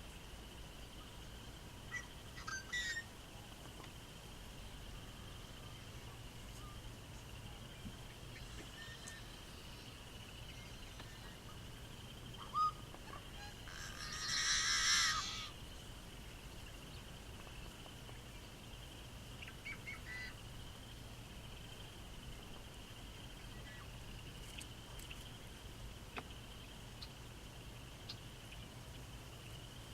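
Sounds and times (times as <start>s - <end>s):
blackbird singing harsh buzz: 1.9s - 3.1s, 8.1s - 15.7s.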